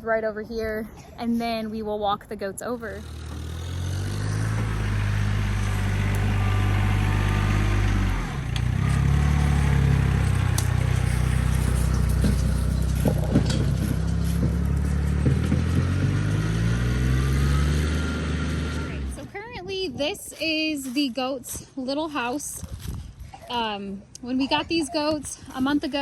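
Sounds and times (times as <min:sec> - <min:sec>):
tractor engine running: 0:02.9 - 0:21.3.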